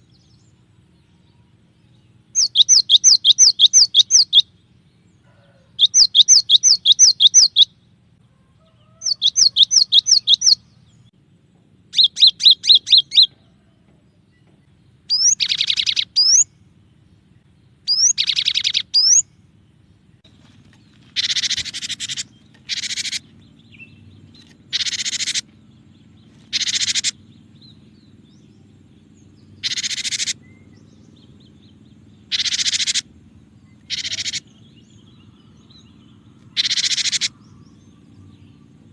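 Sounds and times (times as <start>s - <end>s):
bird singing trilled phrases: 0.0s - 8.0s, 8.7s - 11.2s, 11.9s - 13.5s, 14.3s - 38.9s
harsh buzzy bird churrs: 2.3s - 4.6s, 5.4s - 7.7s, 9.0s - 10.7s, 11.9s - 13.4s, 15.1s - 16.5s, 17.8s - 19.3s, 20.4s - 28.4s, 29.3s - 38.2s.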